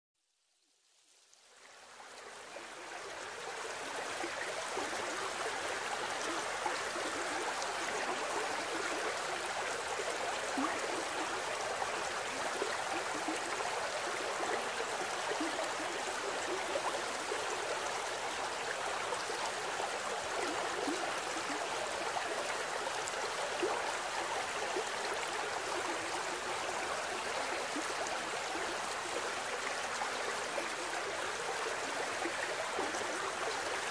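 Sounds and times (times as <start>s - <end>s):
stream rushing over rocks: 1.7s - 33.9s.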